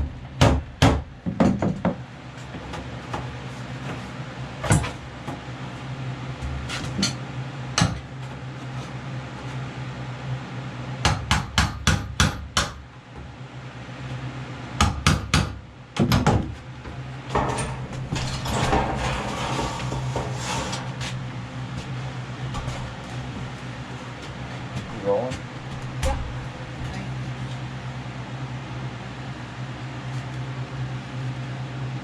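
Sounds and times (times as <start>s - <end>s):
steady low hum: 0.0s - 32.0s
hammer strikes: 11.1s - 12.8s, 14.8s - 16.4s
scraping crumbling noise: 17.3s - 23.9s.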